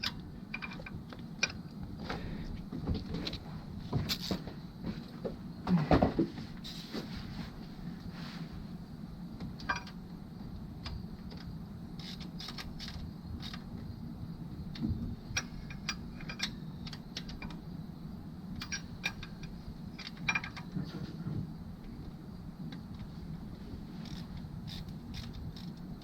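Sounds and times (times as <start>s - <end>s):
ratchet metallic clicks: 0.0s - 1.7s, 10.8s - 13.7s, 14.7s - 17.6s, 18.6s - 20.7s, 24.0s - 26.0s
steady low hum: 0.0s - 26.0s.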